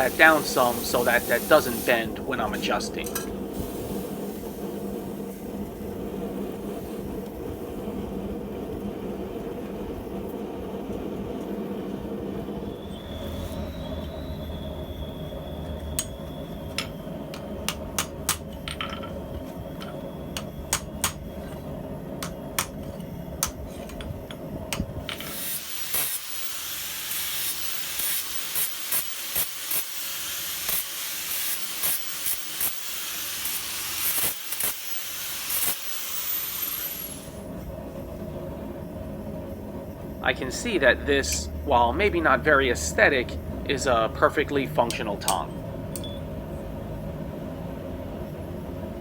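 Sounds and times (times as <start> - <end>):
hot steel sizzling in water: 0.0 - 5.6, 25.2 - 37.4
gas forge rumble: 0.0 - 25.4, 37.2 - 49.0.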